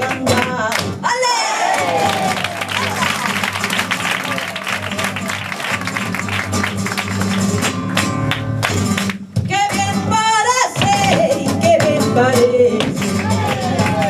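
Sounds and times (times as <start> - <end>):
woman singing: 0.0 - 1.7, 9.4 - 14.0
flamenco guitar strumming: 0.0 - 14.0.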